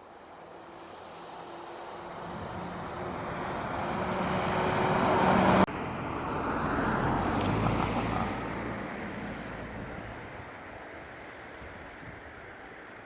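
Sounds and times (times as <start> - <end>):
warning siren howling: 0.5 - 5.7.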